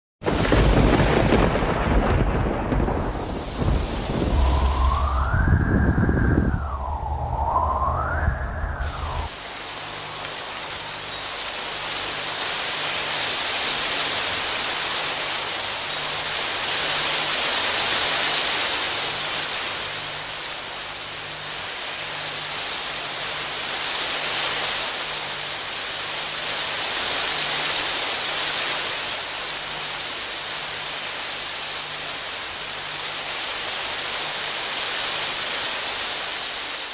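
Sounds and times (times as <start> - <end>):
heavy rain: 0.2 - 36.9.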